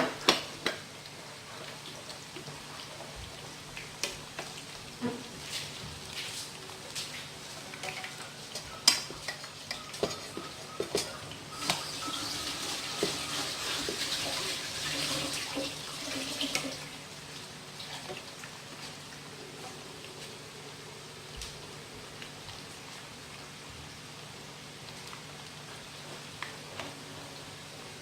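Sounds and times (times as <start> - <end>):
food sizzling in hot oil: 0.0 - 21.2.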